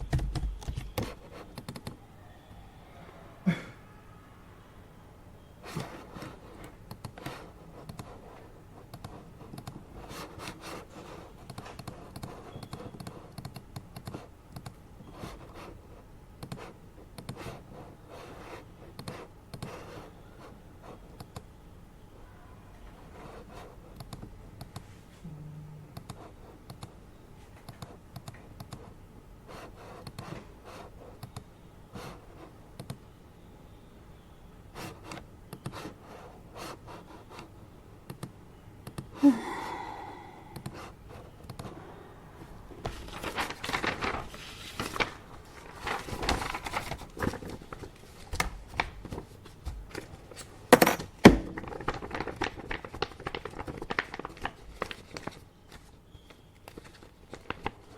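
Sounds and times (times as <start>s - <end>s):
paper rustling and scratching: 42.8s - 50.6s, 51.5s - 57.9s.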